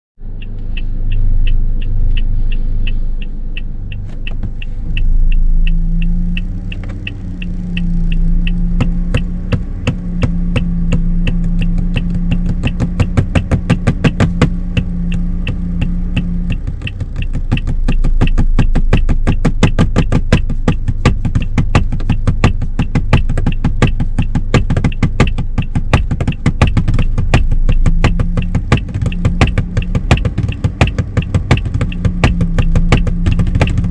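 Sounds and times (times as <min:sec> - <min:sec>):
low engine hum: 0:00.2 - 0:33.9
flasher relay ticking: 0:00.3 - 0:12.9, 0:13.5 - 0:33.9
hand tapping rhythm: 0:01.4 - 0:33.9.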